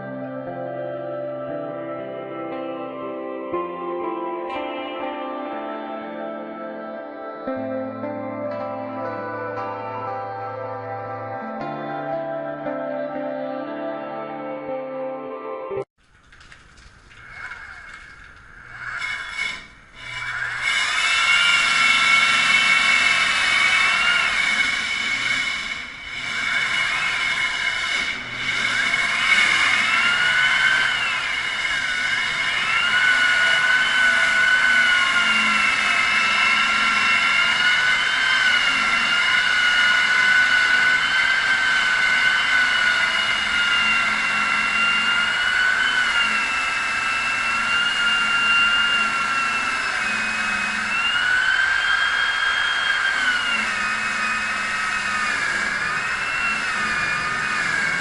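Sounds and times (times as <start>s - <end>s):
machine motor whining: 16.2s - 58.0s.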